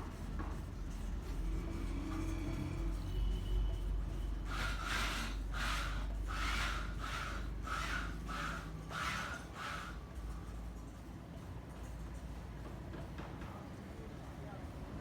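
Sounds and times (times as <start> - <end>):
rhythmic scraping strokes: 0.0 - 10.0.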